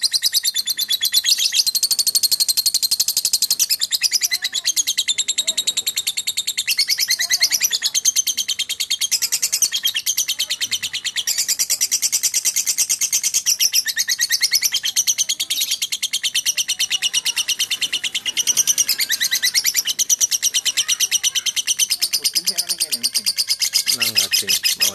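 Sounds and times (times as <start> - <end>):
bird chirping song: 0.0 - 24.9.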